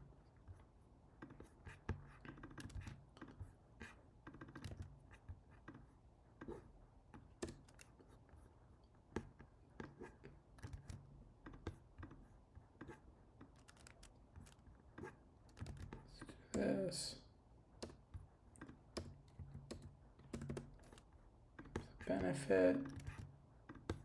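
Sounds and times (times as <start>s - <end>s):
keyboard typing and clicking: 13.4s - 14.6s, 15.5s - 16.7s, 17.8s - 21.1s.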